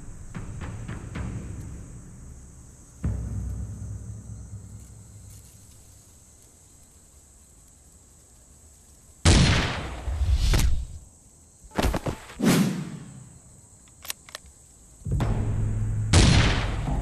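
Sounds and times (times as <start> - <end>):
dramatic music with drums: 0.0 - 5.3, 15.1 - 17.0
echoing rifle shots: 9.3 - 10.1, 16.2 - 17.0
light clicks: 13.8 - 14.6.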